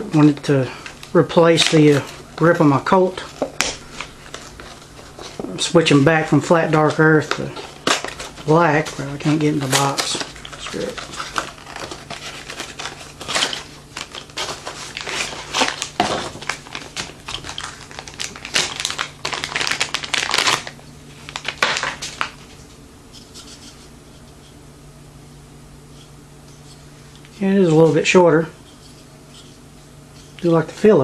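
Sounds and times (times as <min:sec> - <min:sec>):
faint steady hum: 0:00.0 - 0:31.0
packaging crinkling and tearing: 0:00.1 - 0:22.6.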